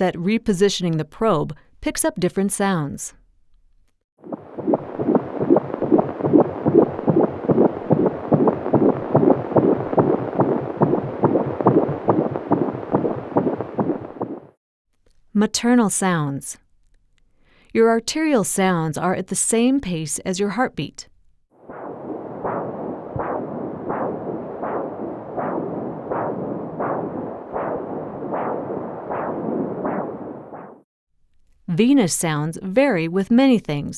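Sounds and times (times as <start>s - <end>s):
fetal heartbeat on doppler: 4.2s - 14.6s, 21.7s - 30.8s
pulsing rushing blood flow: 4.2s - 14.6s, 21.6s - 30.8s.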